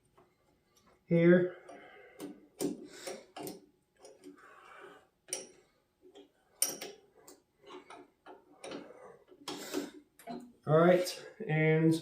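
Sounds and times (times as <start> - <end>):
wrench metallic clicks and taps: 1.7 - 4.4, 5.2 - 10.4.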